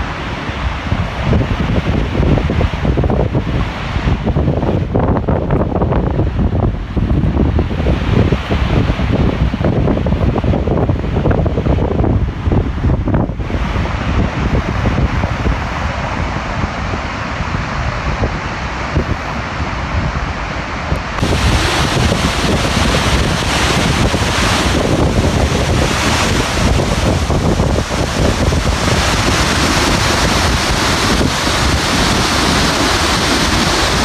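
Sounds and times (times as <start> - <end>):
wind buffeting microphone: 0.0 - 34.0
waterfall rushing: 15.4 - 34.0.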